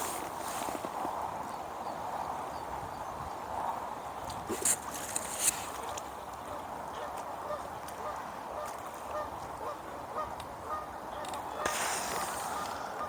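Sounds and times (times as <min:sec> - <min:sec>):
distant geese honking: 0:07.4 - 0:13.0.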